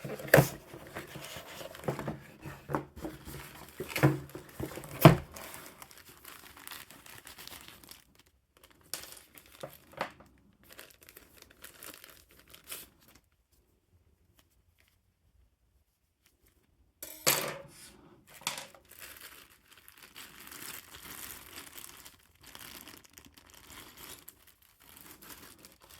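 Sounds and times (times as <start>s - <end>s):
packaging crinkling and tearing: 0.0s - 13.3s, 18.7s - 25.9s.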